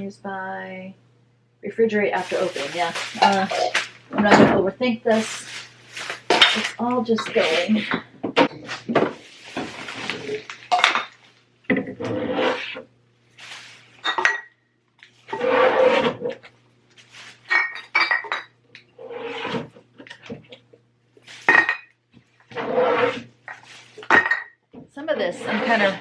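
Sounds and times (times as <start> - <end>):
bottles and jars clinking: 6.3 - 8.0, 10.3 - 11.8, 14.0 - 14.6, 17.4 - 18.6, 21.4 - 21.9, 23.5 - 24.6.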